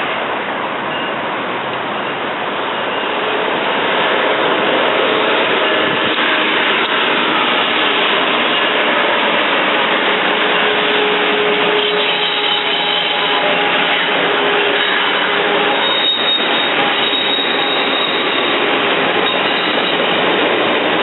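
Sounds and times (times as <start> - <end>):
train wheels rushing on rail: 0.0 - 21.0
faint high squealing: 10.6 - 20.2.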